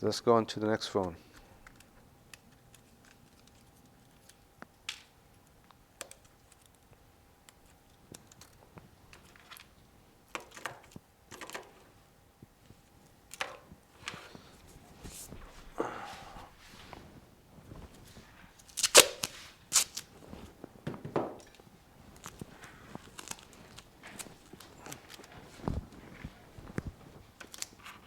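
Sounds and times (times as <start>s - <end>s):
faint steady whine: 0.0s - 28.0s.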